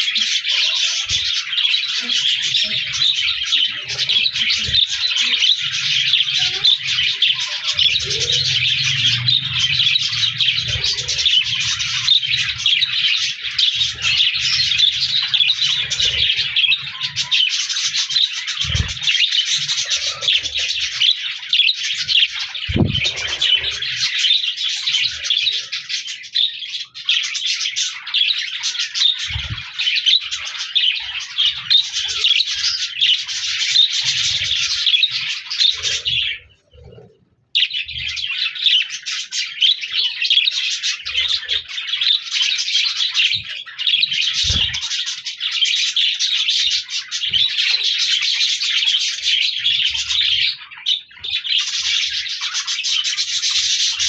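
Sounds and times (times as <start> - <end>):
budgerigars chirping: 0.0 - 37.0, 37.6 - 54.0.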